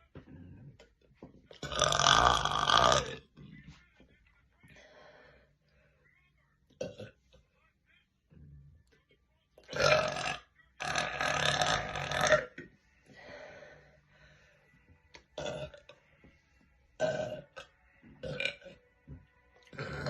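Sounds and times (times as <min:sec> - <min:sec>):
woman burping: 0:01.6 - 0:03.2, 0:06.8 - 0:07.2, 0:09.7 - 0:12.6, 0:15.4 - 0:15.9, 0:17.0 - 0:17.6, 0:18.2 - 0:18.7, 0:19.7 - 0:20.0.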